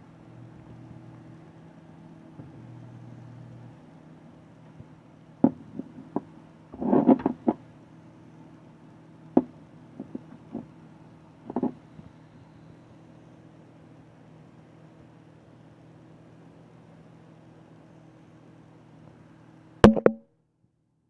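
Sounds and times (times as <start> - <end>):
computer humming: 0.0 - 20.2
sharp clicks and knocks: 5.4 - 7.6, 11.5 - 11.8, 19.8 - 20.2.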